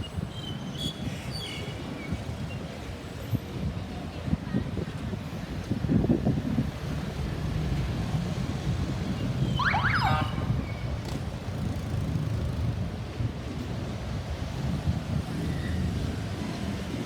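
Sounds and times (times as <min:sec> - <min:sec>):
road traffic rumble: 0:00.0 - 0:17.0
siren chirp: 0:09.6 - 0:10.5.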